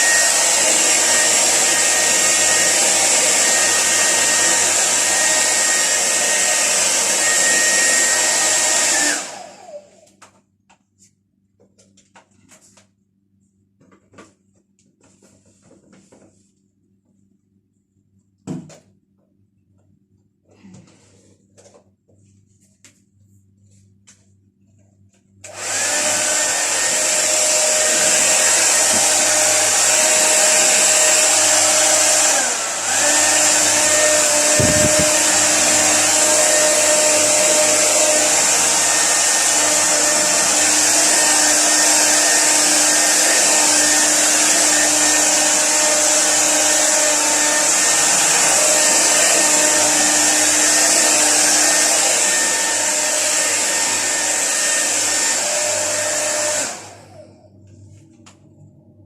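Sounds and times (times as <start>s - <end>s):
hair dryer blowing: 0.0s - 10.3s, 25.4s - 57.6s.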